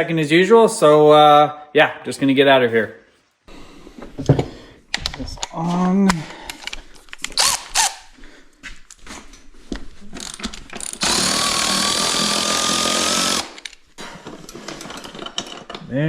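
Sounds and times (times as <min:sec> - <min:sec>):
power tool whining: 0:10.2 - 0:13.7
tools clicking and knocking: 0:10.2 - 0:15.9.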